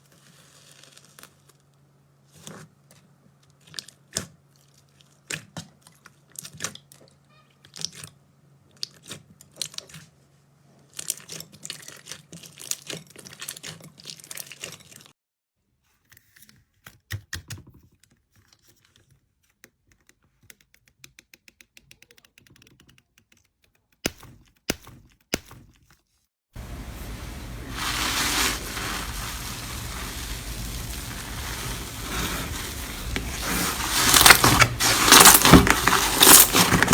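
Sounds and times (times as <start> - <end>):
slime crackling and popping: 26.6 - 36.9.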